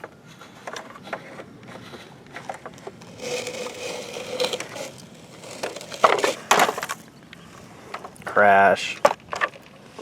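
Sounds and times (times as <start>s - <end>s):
toy truck scraping through gravel: 2.6s - 7.0s.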